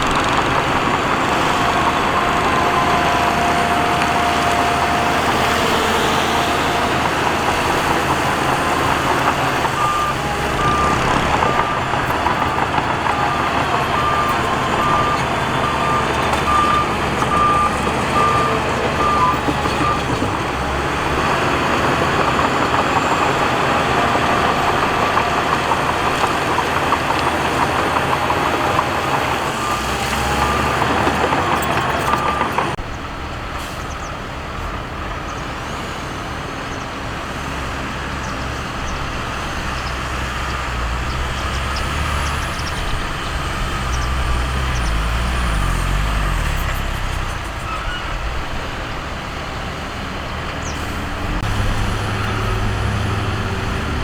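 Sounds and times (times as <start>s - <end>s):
reversing alarm beeping: 0.0s - 20.4s, 28.0s - 32.7s
diesel machinery engine rumble: 0.0s - 54.0s.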